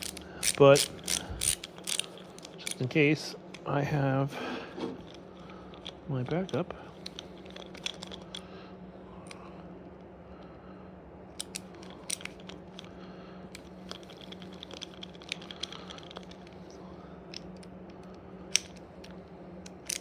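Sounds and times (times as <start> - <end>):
hand tools clicking and tapping: 0.0 - 2.8
steady low hum: 0.0 - 20.0.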